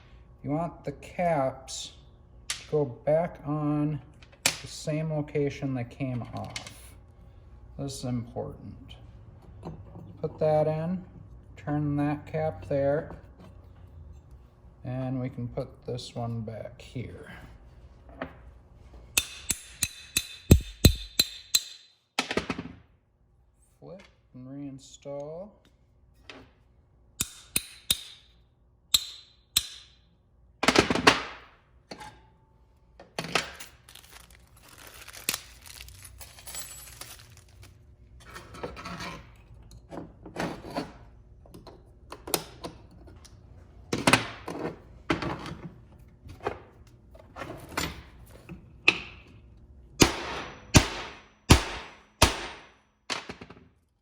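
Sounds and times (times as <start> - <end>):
hammer tapping on metal: 19.2 - 21.9
scraping and handling of parts: 33.0 - 41.0.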